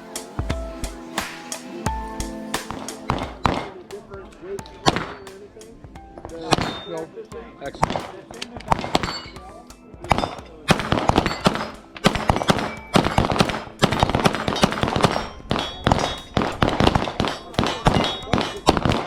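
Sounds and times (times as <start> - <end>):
rapid pistol shots: 7.8 - 9.3, 10.1 - 19.0.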